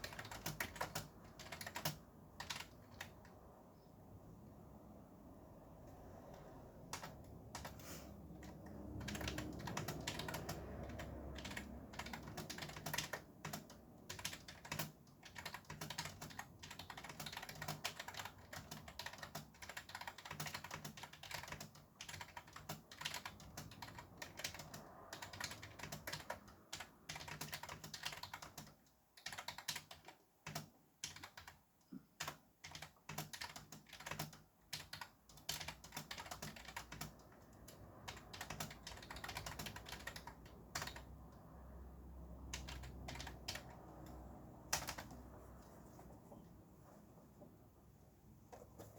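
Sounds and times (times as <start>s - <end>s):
fast typing on keyboard: 0.0s - 3.4s, 6.8s - 41.6s, 42.4s - 45.3s
traffic rumble: 4.5s - 13.4s, 37.2s - 48.9s.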